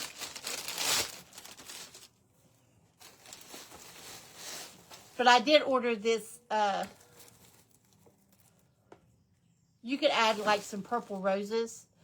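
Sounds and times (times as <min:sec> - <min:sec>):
packaging crinkling and rustling: 0:00.0 - 0:02.2, 0:03.0 - 0:05.2, 0:06.8 - 0:08.6.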